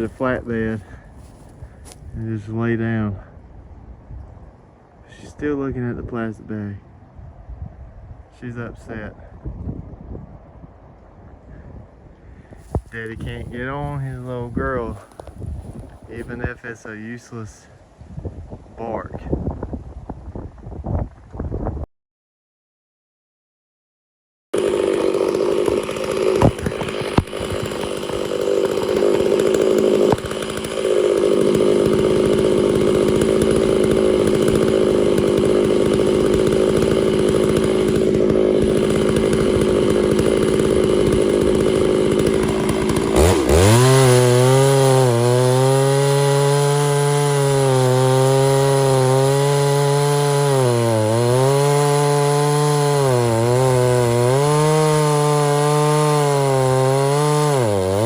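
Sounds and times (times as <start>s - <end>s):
chainsaw cutting through log: 0.0s - 2.1s, 12.6s - 17.2s, 24.6s - 58.0s.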